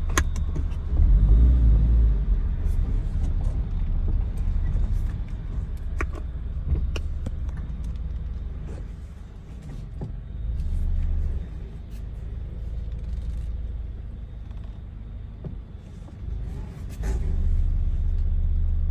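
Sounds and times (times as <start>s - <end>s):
clicks from car front end: 0.0s - 0.9s
car engine low rumble: 0.0s - 18.9s.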